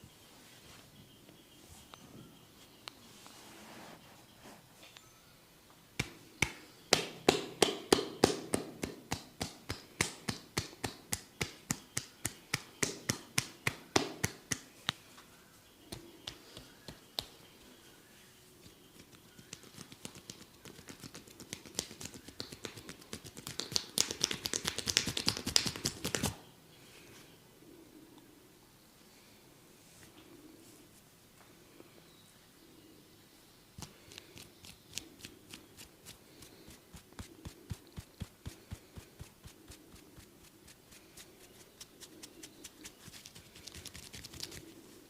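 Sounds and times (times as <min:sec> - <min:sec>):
hands tapping on head: 0:06.0 - 0:15.0, 0:15.9 - 0:17.4, 0:18.6 - 0:26.3.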